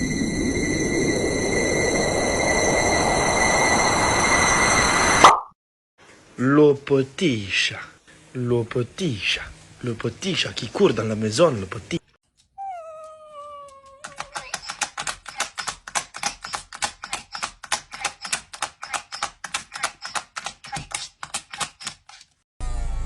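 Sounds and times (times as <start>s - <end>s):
cat meowing: 12.6s - 14.7s
rapid even clicking: 14.0s - 22.2s.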